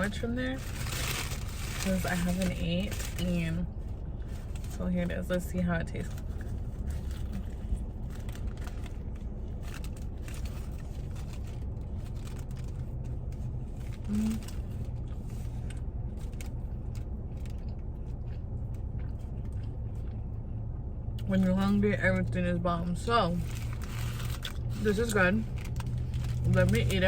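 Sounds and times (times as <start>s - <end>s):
wrapper rustling: 0.0s - 17.5s, 23.3s - 27.0s
person chewing food: 12.2s - 21.2s
person humming: 14.1s - 14.4s.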